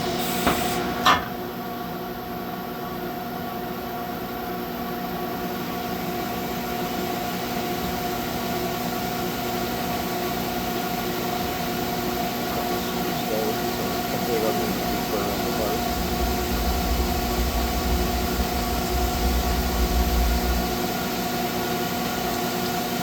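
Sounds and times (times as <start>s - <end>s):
lathe humming: 9.8s - 23.0s.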